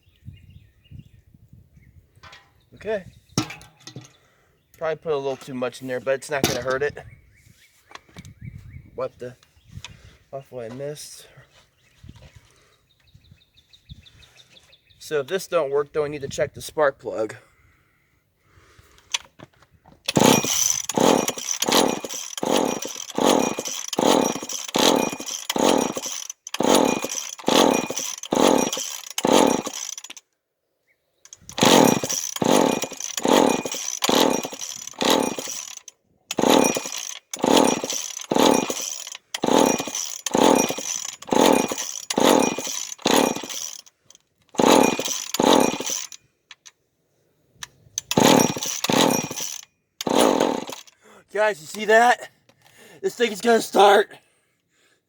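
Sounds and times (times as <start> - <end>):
chainsaw recoil rope pulls: 20.1 - 30.3, 31.3 - 46.7, 48.0 - 52.1.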